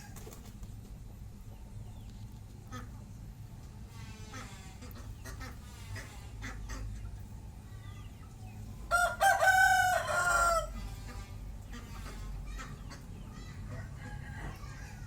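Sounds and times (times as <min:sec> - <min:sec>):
rooster crowing: 0:08.9 - 0:10.9.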